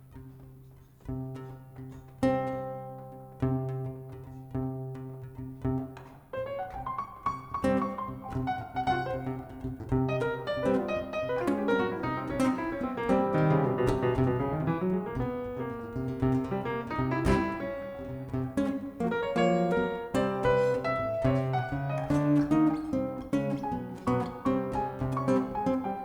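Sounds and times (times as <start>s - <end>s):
jazz piano playing: 5.8s - 26.0s.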